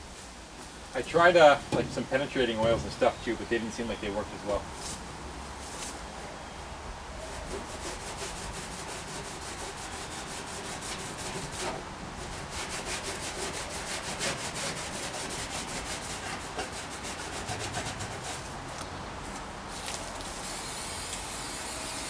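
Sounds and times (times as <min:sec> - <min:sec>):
abrasive scrubbing on sheet metal: 0:01.0 - 0:04.6, 0:07.3 - 0:18.6.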